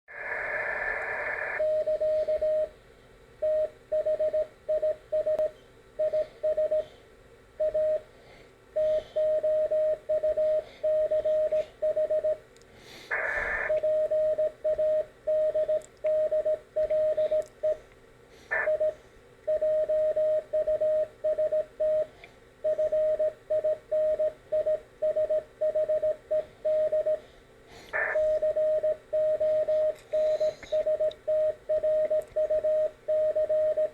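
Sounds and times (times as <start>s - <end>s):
noise bursts: 0.1s - 3.4s, 8.8s - 21.7s, 26.4s - 33.9s
morse code beeps: 1.6s - 2.7s, 3.4s - 6.8s, 7.6s - 8.0s, 8.8s - 12.4s, 13.7s - 17.8s, 18.6s - 22.1s, 22.7s - 27.2s, 28.0s - 33.9s.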